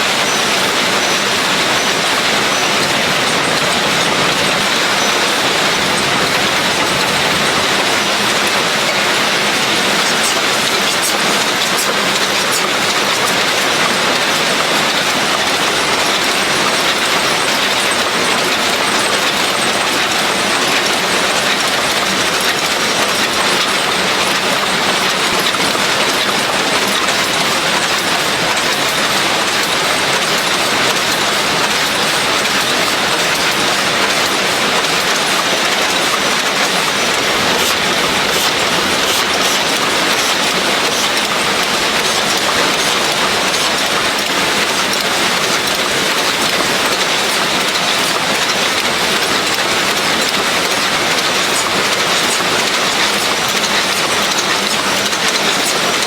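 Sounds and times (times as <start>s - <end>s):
rapid mechanical ticking: 0.0s - 56.0s
machinery rushing: 20.0s - 56.0s.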